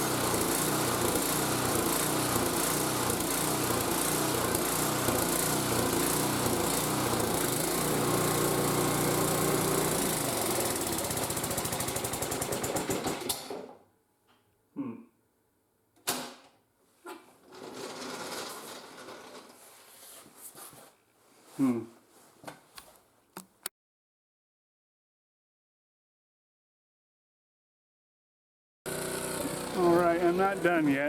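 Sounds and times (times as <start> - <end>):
small engine running: 0.0 - 13.5, 28.9 - 31.0.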